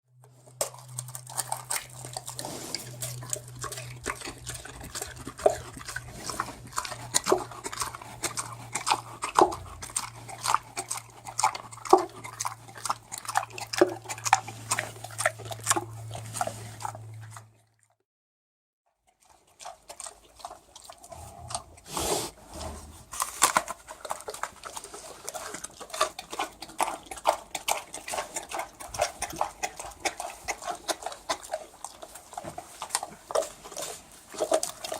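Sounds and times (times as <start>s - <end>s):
low steady hum: 0.1s - 17.7s
pig chewing wetly: 0.1s - 18.0s, 18.9s - 34.9s.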